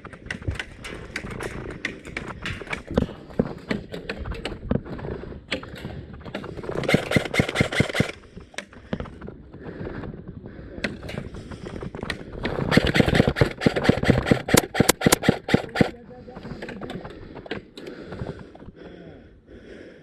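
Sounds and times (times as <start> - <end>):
clicks and rustling: 0.0 - 18.8
airsoft guns firing bursts: 6.6 - 8.3, 12.5 - 16.0.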